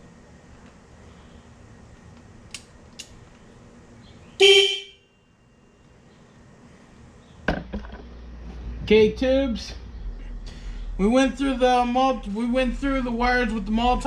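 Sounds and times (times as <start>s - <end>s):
short electric horn honk: 4.4s - 5.1s.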